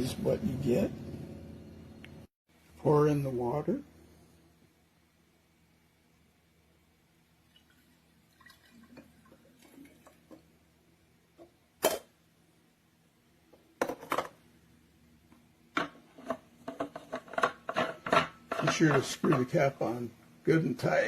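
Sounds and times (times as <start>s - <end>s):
water trickling: 7.5s - 10.4s.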